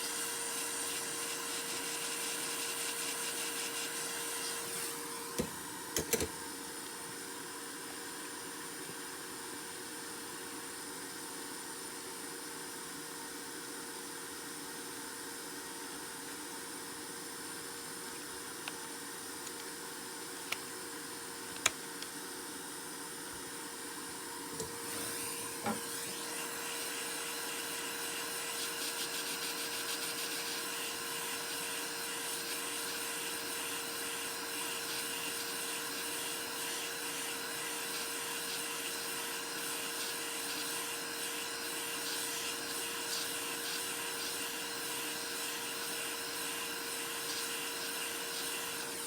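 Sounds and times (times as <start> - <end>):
small electric blower running: 0.0 - 6.3, 24.4 - 49.0.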